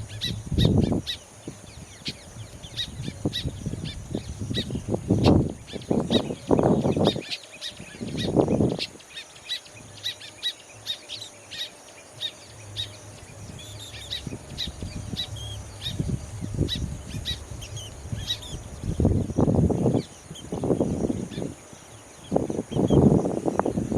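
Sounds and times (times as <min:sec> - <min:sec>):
birds chirping and chattering: 0:00.0 - 0:23.9
low rumble bursts: 0:12.5 - 0:19.9.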